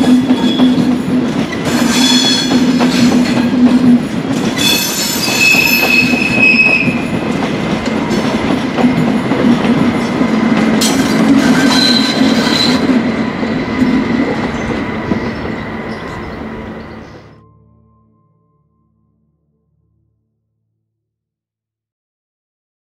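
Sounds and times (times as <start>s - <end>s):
train rumbling over track: 0.0s - 17.4s
wheel squeal: 4.6s - 7.1s, 11.3s - 13.0s.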